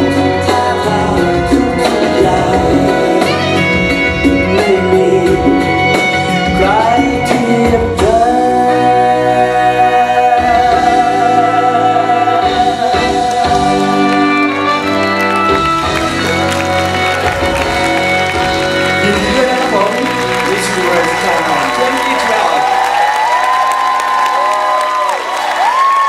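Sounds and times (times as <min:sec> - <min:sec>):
man singing: 0:00.0 - 0:14.8, 0:18.9 - 0:22.7.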